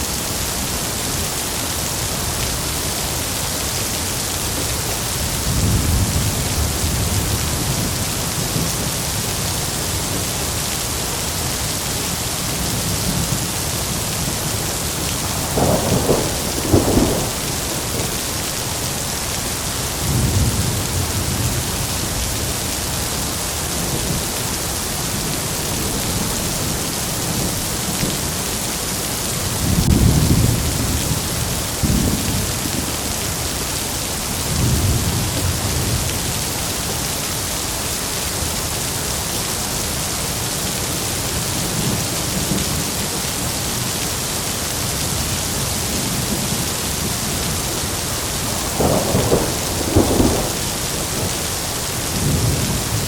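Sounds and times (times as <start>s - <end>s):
heavy rain falling: 0.0s - 53.0s
thunder rumbling: 14.0s - 21.9s, 48.4s - 53.0s.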